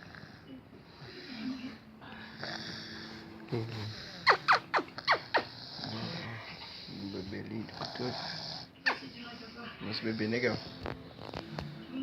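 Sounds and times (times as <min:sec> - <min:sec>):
soft snoring: 0:02.3 - 0:04.2, 0:05.4 - 0:08.8, 0:09.8 - 0:12.0.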